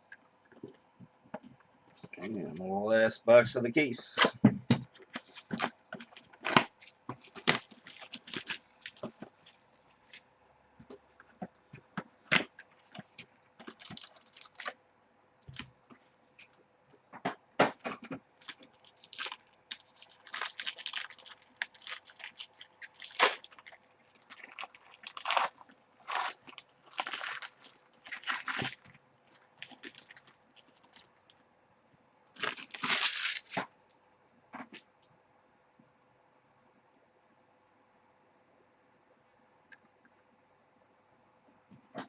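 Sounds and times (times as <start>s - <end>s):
plastic wrappers crinkling and tearing: 4.9s - 10.3s, 12.3s - 14.8s, 18.3s - 31.4s, 32.3s - 33.6s.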